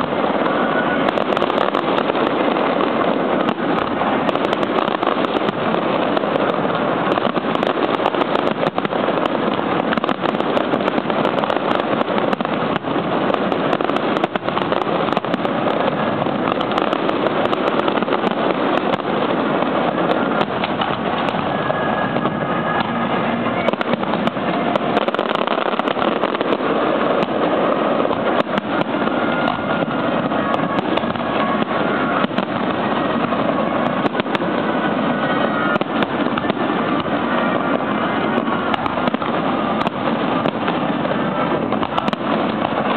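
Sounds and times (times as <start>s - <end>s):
fireworks bangs and crackles: 0.0s - 42.9s.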